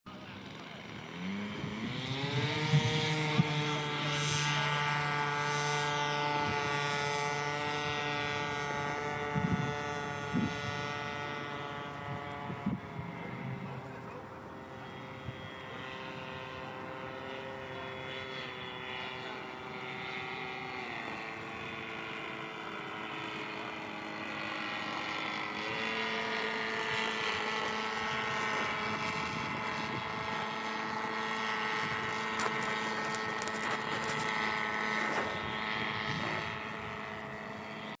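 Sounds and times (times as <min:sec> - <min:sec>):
model airplane motor whining: 0:00.1 - 0:38.0.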